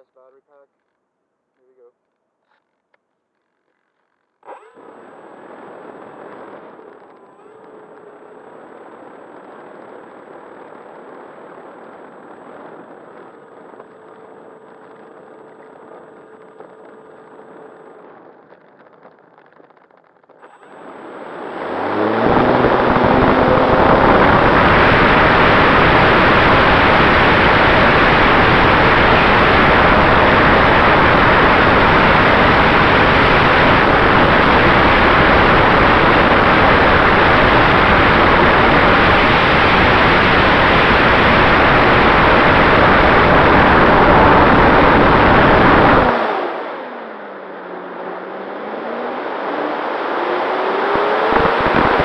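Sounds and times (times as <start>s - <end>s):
electric motor and propeller whine: 20.5s - 52.0s
wind noise: 21.7s - 46.5s, 49.4s - 52.0s.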